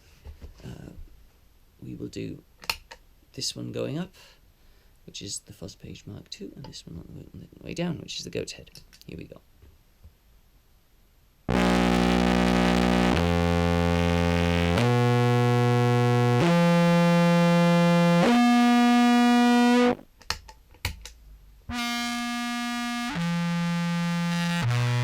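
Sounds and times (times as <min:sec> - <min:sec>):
distorted buzzy clarinet notes: 0:11.5 - 0:20.0, 0:21.7 - 0:25.0.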